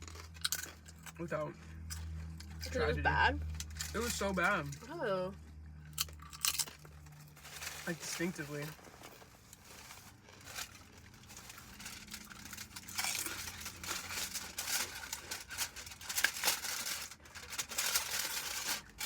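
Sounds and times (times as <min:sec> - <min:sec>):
food wrappers crinkling: 0:06.0 - 0:19.0.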